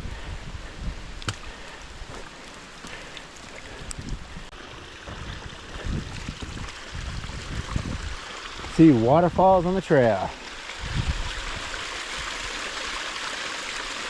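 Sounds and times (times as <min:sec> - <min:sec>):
water cascade rushing: 0:04.5 - 0:14.0.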